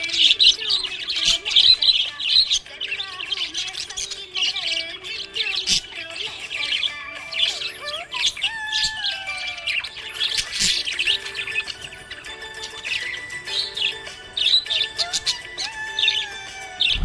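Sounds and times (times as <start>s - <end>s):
background music: 0.0s - 17.0s
budgerigars chirping: 0.0s - 17.0s.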